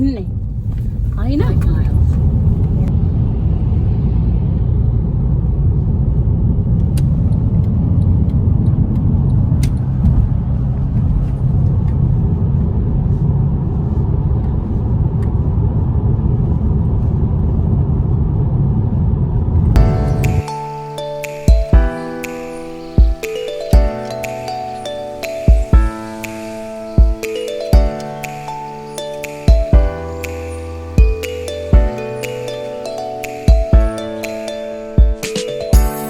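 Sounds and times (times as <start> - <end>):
car cabin road rumble: 0.0 - 20.4.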